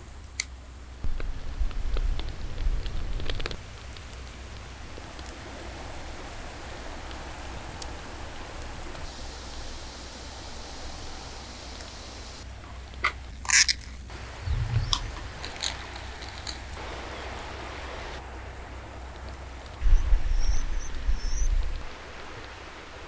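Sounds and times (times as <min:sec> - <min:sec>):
mountain stream rushing: 0:05.4 - 0:12.6, 0:13.5 - 0:23.0
sharp clicks: 0:13.4 - 0:16.8
low thump: 0:14.4 - 0:15.6.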